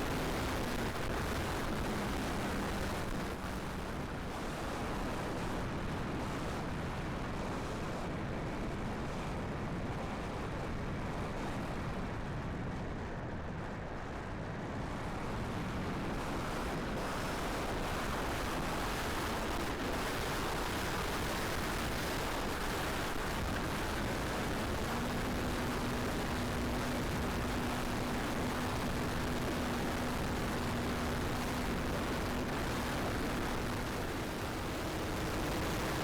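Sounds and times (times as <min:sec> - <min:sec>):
gusty wind buffeting microphone: 0:17.8 - 0:36.0.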